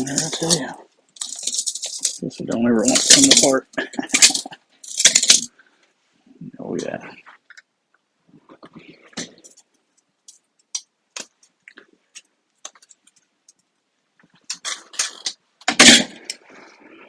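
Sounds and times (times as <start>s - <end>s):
metal clatter: 0.0s - 2.2s, 2.8s - 5.5s
tools clicking on metal parts: 1.2s - 2.2s, 2.8s - 5.5s.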